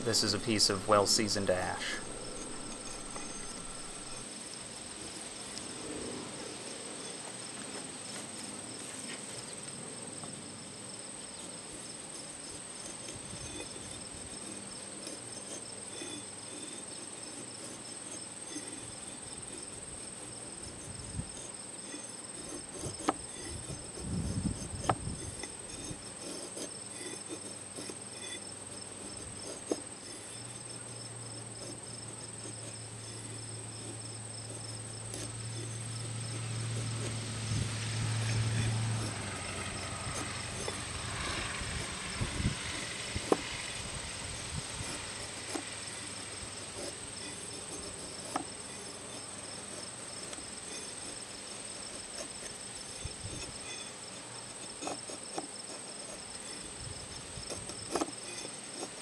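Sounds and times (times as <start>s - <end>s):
insects chirping: 0.0s - 59.0s.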